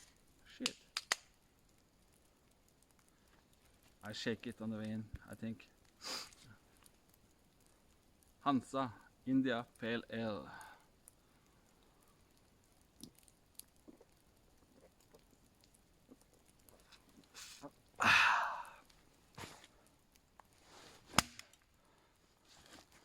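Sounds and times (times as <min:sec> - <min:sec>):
wood cracking: 0:00.0 - 0:08.5, 0:09.7 - 0:23.0
axe striking wood: 0:21.1 - 0:21.4.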